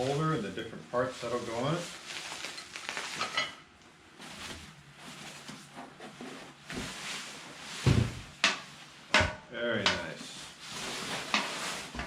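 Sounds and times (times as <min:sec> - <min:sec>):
packaging rustling and knocking: 0:04.2 - 0:08.5
heavy thump: 0:07.8 - 0:08.3.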